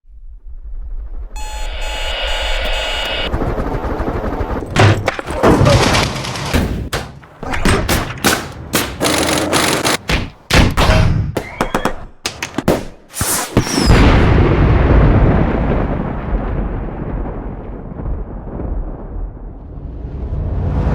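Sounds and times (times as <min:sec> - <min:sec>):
electronic alarm beeping: 0:01.4 - 0:03.3
sharp bangs and impacts: 0:04.6 - 0:15.9
rumbling explosion blast: 0:13.9 - 0:20.9.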